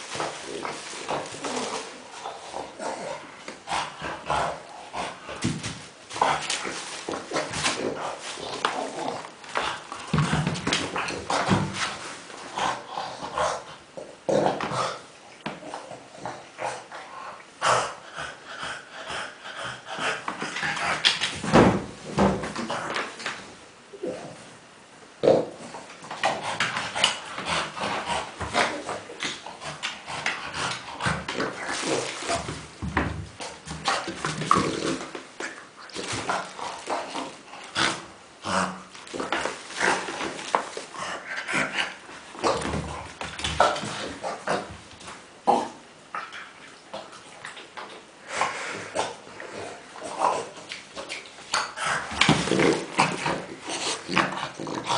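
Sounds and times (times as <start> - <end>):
dog making pig-like noises: 25.2 - 32.5.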